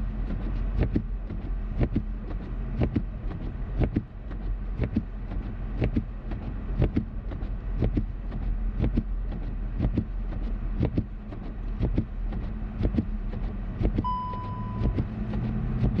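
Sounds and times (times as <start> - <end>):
car engine and road hum: 0.0 - 16.0
windshield wiper thumps: 0.1 - 16.0.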